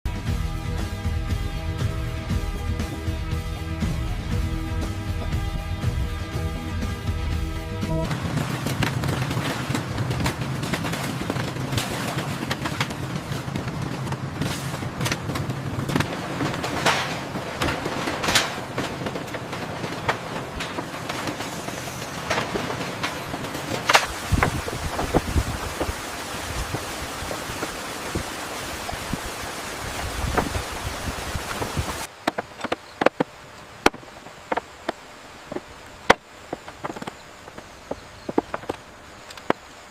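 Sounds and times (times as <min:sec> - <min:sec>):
engine running: 0:00.0 - 0:32.1
steady rush of noise: 0:00.1 - 0:39.9
irregular clicks and knocks: 0:08.0 - 0:26.0, 0:31.5 - 0:39.9
sharp knocks and taps: 0:32.1 - 0:39.7.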